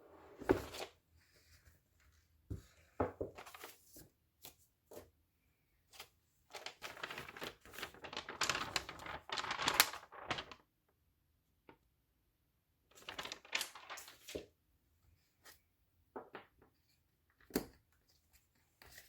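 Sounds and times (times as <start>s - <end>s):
packaging crinkling and rustling: 6.5s - 10.6s, 12.9s - 14.4s.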